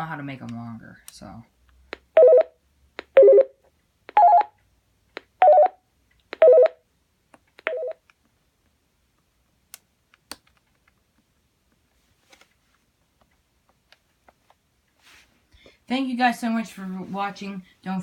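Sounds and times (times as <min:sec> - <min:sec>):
warbling phone ringtone: 0:02.2 - 0:02.6, 0:03.2 - 0:03.6, 0:04.2 - 0:04.6, 0:05.4 - 0:05.8, 0:06.4 - 0:06.8, 0:07.7 - 0:08.0.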